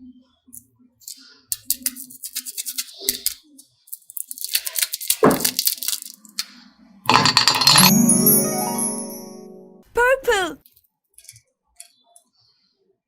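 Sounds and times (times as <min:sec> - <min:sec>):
play dough crinkles and clicks: 0:00.5 - 0:06.6, 0:10.6 - 0:12.4.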